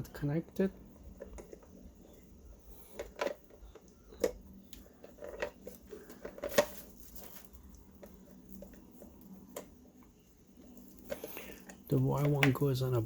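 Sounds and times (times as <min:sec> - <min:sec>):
small parts clicking and tapping: 0:02.8 - 0:12.6.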